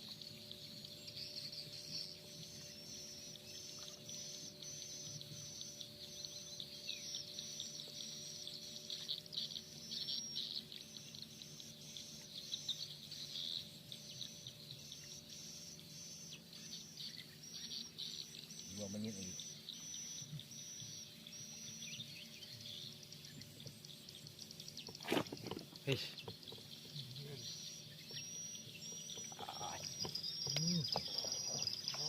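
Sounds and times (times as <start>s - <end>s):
insects chirping: 0.0s - 32.0s
steady low hum: 0.0s - 32.0s.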